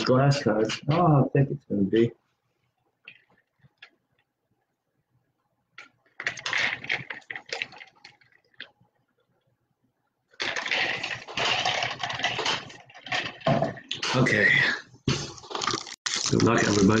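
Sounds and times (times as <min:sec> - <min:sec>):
plastic wrapping crinkling: 0:10.4 - 0:14.4, 0:15.2 - 0:17.0.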